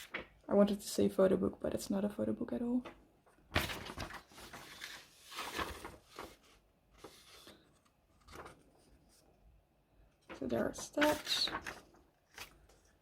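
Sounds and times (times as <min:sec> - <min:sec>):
paper rustling: 0:00.0 - 0:00.4, 0:03.5 - 0:09.3, 0:10.2 - 0:13.0.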